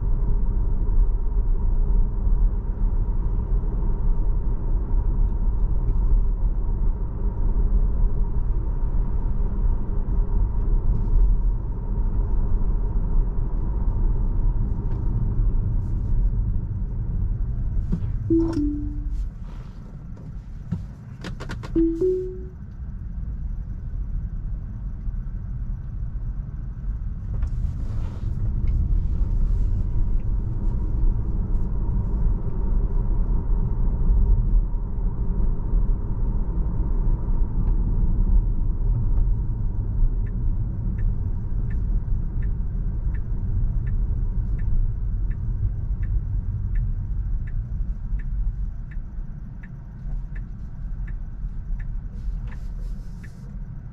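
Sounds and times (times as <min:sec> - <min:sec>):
turn signal ticking: 0:18.3 - 0:19.2, 0:21.6 - 0:22.5, 0:39.9 - 0:53.9
two-note chime: 0:18.3 - 0:19.2, 0:21.8 - 0:22.6.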